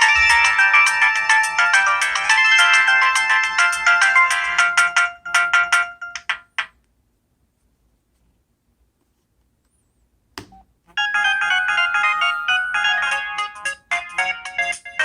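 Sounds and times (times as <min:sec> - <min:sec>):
cell phone ringtone melody: 0:10.9 - 0:15.0.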